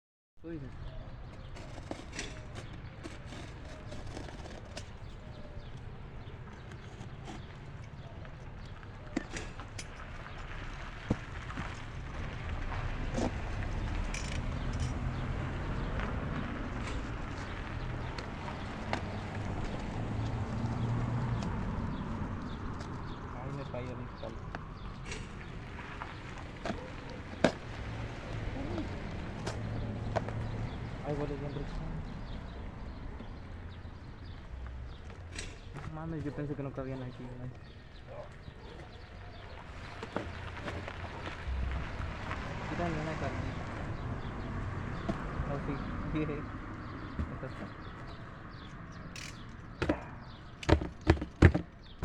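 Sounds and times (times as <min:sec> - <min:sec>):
handling clicks and knocks: 0:00.7 - 0:12.3, 0:13.1 - 0:15.2, 0:46.7 - 0:52.0.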